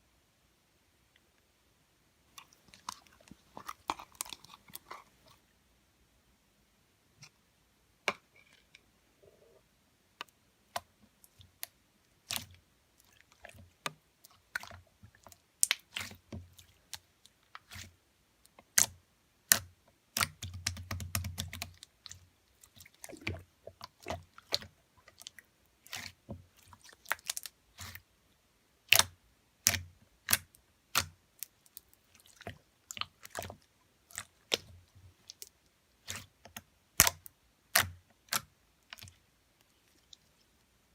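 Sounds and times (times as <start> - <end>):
slime squelching: 2.3 - 5.5, 10.2 - 28.2, 28.8 - 40.6
slime clicking and popping: 28.9 - 31.5, 35.3 - 39.2.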